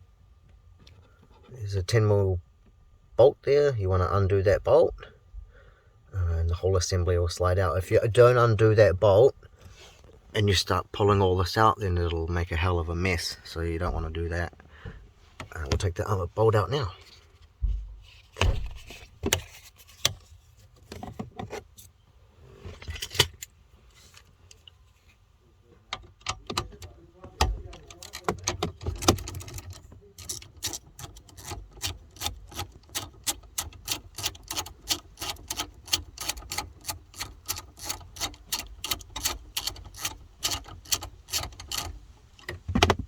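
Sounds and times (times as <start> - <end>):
ratchet wrench clicking: 29.0 - 42.0.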